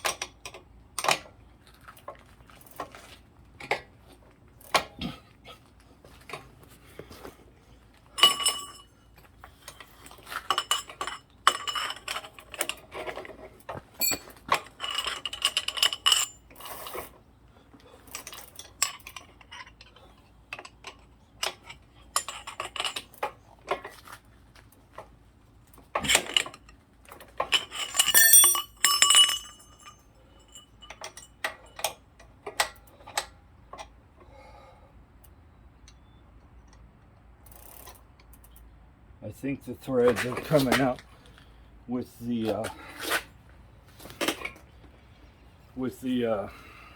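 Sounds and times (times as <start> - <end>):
metal hand tools clinking: 8.2 - 9.0, 9.7 - 12.8, 14.0 - 17.1, 27.4 - 32.0.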